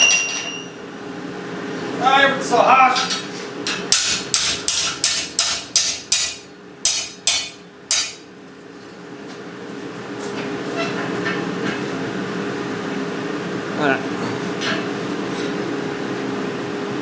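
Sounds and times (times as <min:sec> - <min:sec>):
hammer striking steel: 0:03.0 - 0:08.3.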